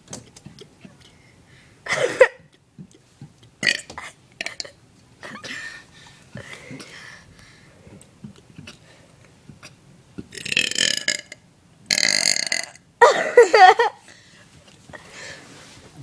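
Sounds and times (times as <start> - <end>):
person burping loudly: 3.6 - 4.8, 10.3 - 13.4.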